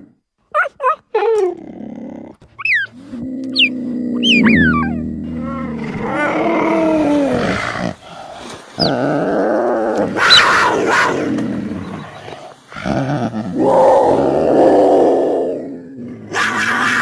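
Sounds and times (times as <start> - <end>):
big cat calls: 2.7 - 7.8.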